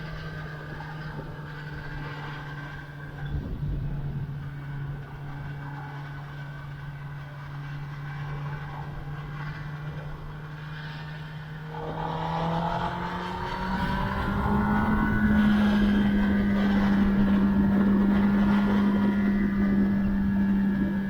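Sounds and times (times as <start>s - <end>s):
motorcycle engine revving: 11.2s - 21.0s.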